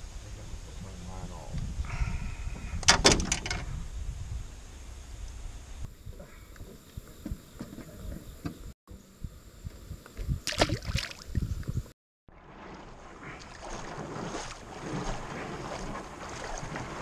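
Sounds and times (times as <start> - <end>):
knocks and bumps in a boat: 12.6 - 17.0.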